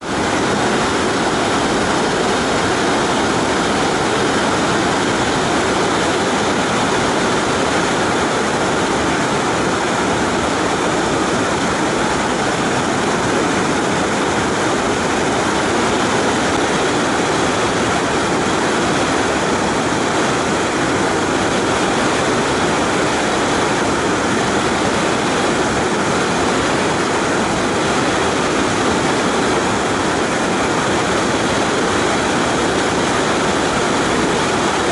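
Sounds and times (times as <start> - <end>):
waterfall roaring: 0.0 - 34.9.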